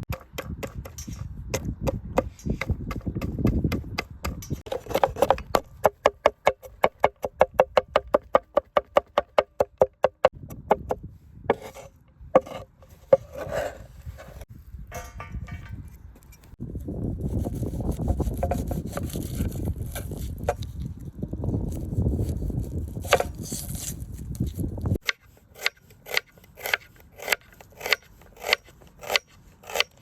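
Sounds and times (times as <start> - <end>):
irregular knocks: 2.7 - 11.0.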